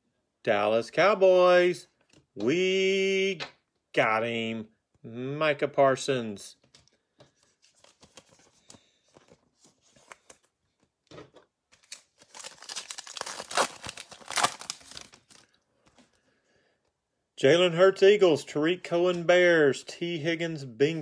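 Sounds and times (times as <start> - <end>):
cards clicking and rustling: 6.6 - 16.1
card pack wrapper tearing and crinkling: 11.7 - 15.5.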